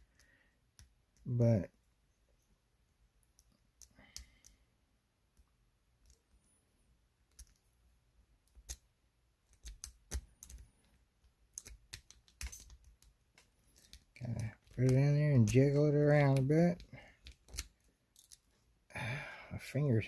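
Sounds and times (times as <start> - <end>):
lock picking metallic clicks: 11.5 - 15.7.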